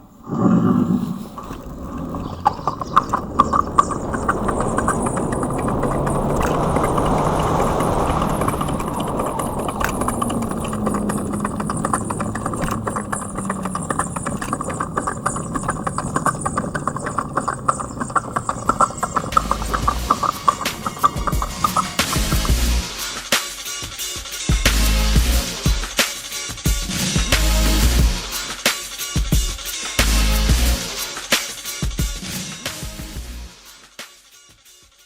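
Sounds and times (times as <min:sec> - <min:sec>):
low hum: 0:00.0 - 0:23.0
electric unicycle riding sound: 0:00.0 - 0:33.6
regular clicks: 0:00.3 - 0:22.9.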